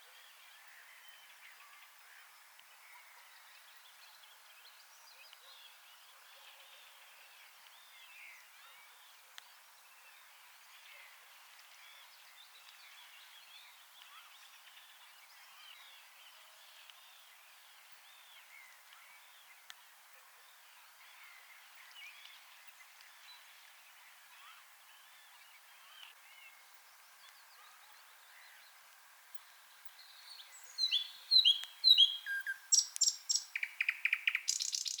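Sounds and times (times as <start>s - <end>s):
background hiss: 0.0s - 35.0s
songbird singing: 0.0s - 35.0s
birds chirping and warbling: 30.0s - 35.0s.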